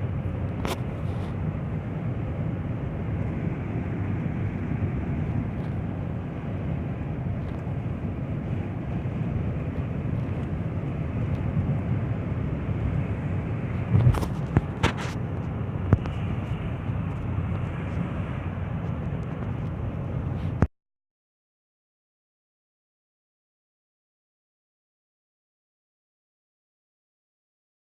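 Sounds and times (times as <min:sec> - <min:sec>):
car engine and road noise: 0:00.0 - 0:20.7.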